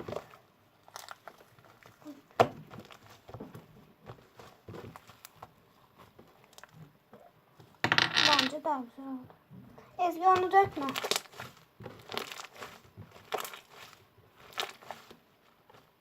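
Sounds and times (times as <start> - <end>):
slime sticky clicks and crackles: 10.8 - 15.1.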